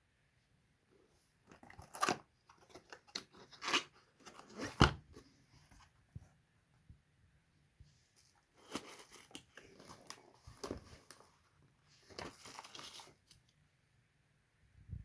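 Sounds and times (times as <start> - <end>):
packaging crinkling and rustling: 1.5 - 5.0, 8.2 - 11.3, 12.0 - 13.5.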